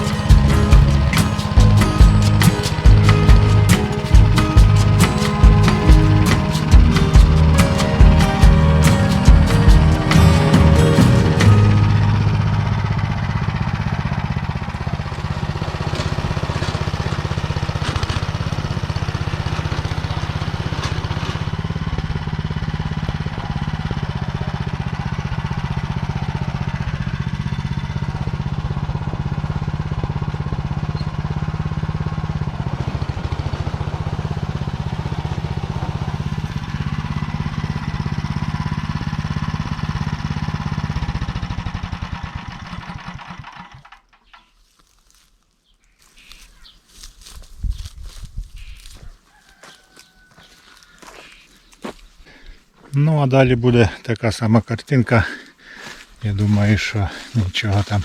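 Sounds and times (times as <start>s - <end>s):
small tractor engine running: 0.0s - 44.3s
rotary tiller in dry soil: 0.0s - 45.3s, 55.4s - 58.0s.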